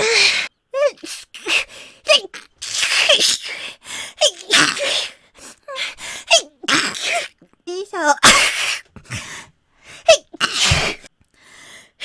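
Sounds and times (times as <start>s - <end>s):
woman sneezing: 8.2s - 8.9s, 10.1s - 11.1s.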